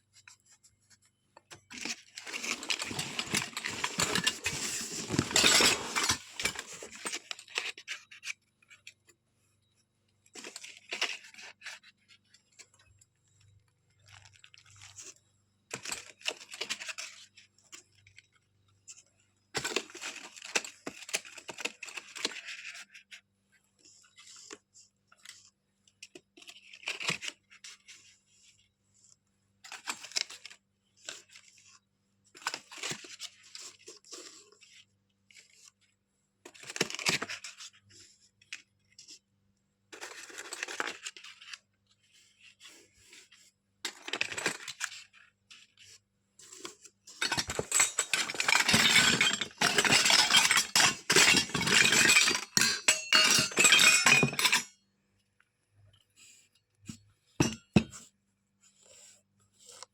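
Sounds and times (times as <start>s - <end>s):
toy kitchen pieces clinking: 1.8s - 7.7s, 47.2s - 54.7s
toy pieces clattering: 47.2s - 54.7s.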